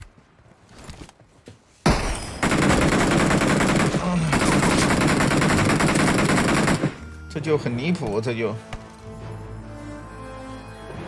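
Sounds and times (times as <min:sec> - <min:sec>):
rapid automatic gunfire: 0:02.4 - 0:07.0.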